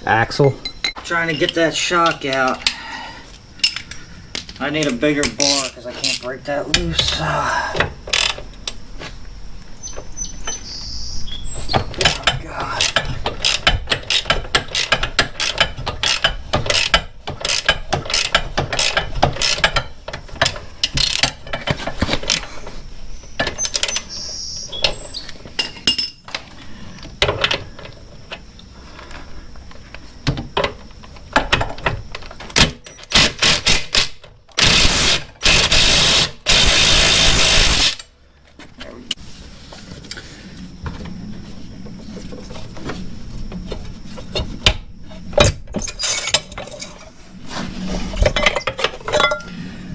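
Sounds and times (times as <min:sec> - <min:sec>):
ratchet clicking and metal knocks: 0:03.6 - 0:07.1, 0:11.8 - 0:22.4.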